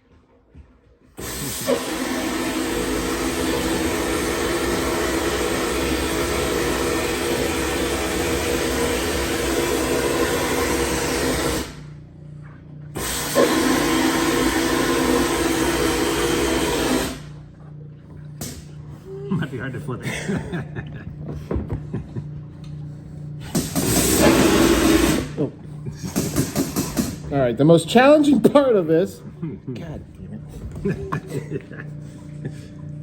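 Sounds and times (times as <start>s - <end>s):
low machine hum: 0.2s - 33.0s
hissing abrasive spray blast: 1.2s - 11.9s, 13.0s - 17.3s, 23.5s - 25.4s.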